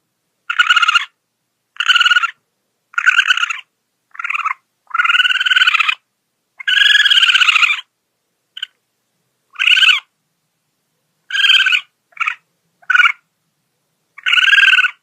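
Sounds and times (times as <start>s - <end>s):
possum calling: 0.4s - 1.2s, 1.8s - 7.9s, 8.6s - 8.8s, 9.5s - 10.1s, 11.3s - 13.3s, 14.2s - 15.0s.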